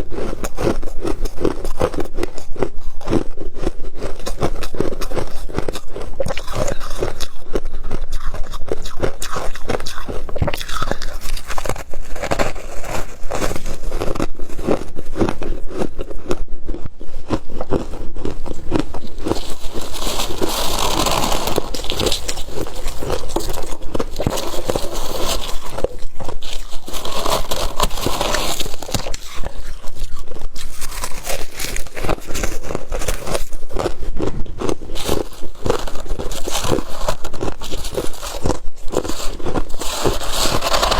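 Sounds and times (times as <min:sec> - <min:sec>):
crunching frost being chewed: 0:00.0 - 0:40.9.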